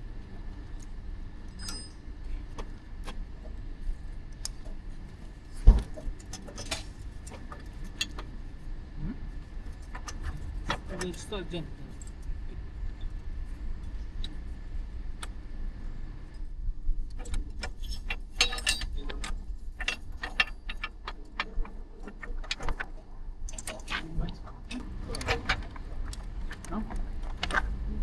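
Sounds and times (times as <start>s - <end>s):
metallic clinks and knocks: 1.5s - 2.0s, 17.6s - 22.8s
steady low hum: 6.8s - 28.0s.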